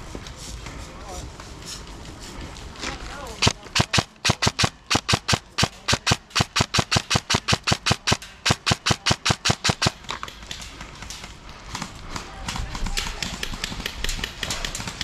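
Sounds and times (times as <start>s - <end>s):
rapid sharp cracks: 3.4s - 15.0s.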